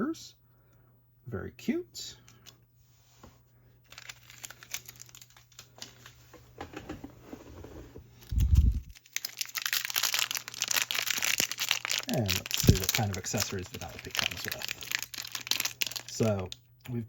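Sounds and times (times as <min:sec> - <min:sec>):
plastic parts clicking and rustling: 0:03.8 - 0:07.0, 0:08.2 - 0:16.6
plastic packet tearing open: 0:03.9 - 0:06.1, 0:08.2 - 0:16.6.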